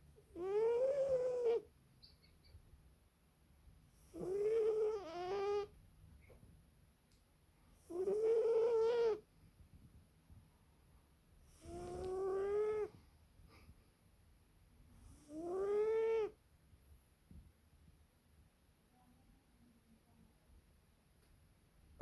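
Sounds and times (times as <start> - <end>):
cat snoring: 0.3 - 1.7, 3.9 - 5.7, 7.8 - 9.2, 11.4 - 13.0, 15.0 - 16.4.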